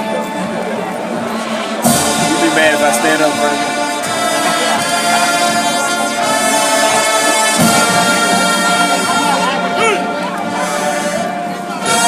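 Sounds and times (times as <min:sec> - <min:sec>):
brass band playing held chords: 0:00.0 - 0:12.0.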